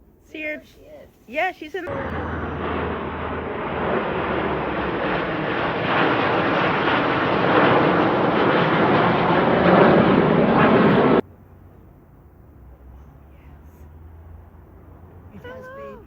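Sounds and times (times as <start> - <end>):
jet aircraft flying over: 1.9 - 11.2.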